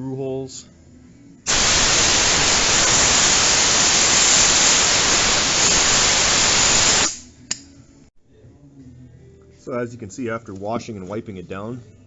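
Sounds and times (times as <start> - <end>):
compressed air blow gun hissing: 1.5 - 7.2
click: 7.5 - 7.7.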